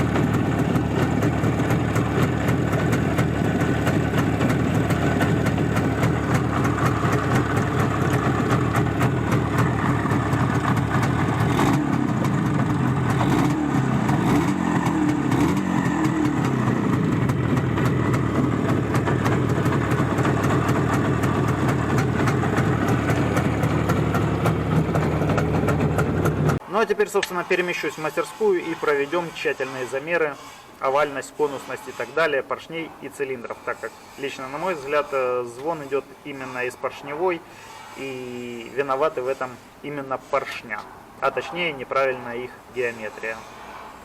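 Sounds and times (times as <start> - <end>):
motorcycle engine running and revving: 0.0 - 26.6.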